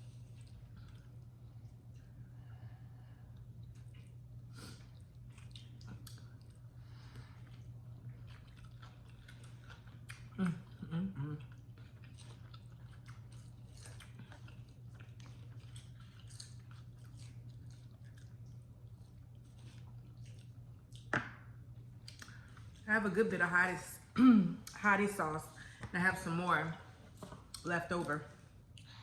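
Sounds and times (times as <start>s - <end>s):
person chewing crunchy food: 0.0s - 2.3s, 3.3s - 22.8s
low hum: 0.0s - 29.0s.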